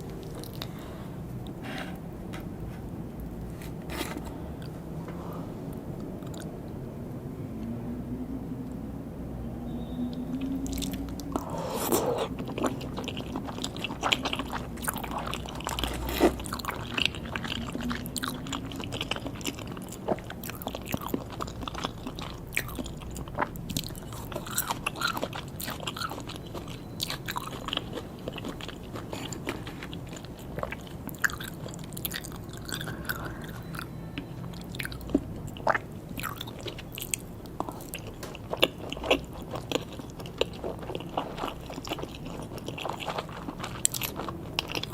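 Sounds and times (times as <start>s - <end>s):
chewing and biting food: 10.7s - 44.9s.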